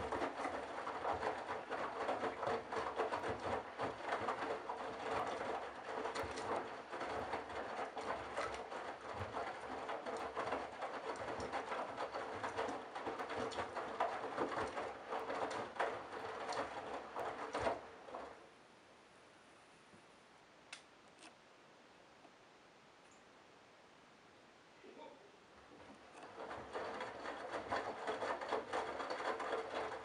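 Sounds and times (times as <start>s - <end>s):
washing machine motor hum: 0.0s - 18.4s, 25.7s - 30.0s
laundry and water splashing: 0.0s - 18.6s, 25.6s - 30.0s.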